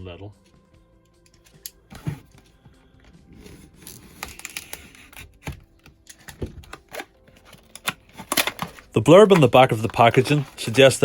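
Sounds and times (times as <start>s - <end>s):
packaging clicks and rustles: 3.6s - 11.0s.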